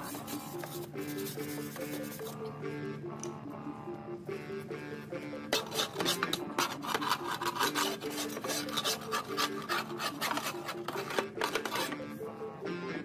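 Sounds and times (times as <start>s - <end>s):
metal bar scraping metal deck: 5.6s - 11.9s.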